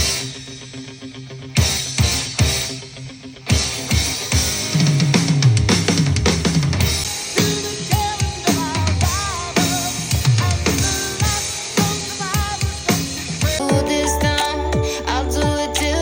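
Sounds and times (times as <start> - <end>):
pop music with drums and bass: 3.5 - 16.0.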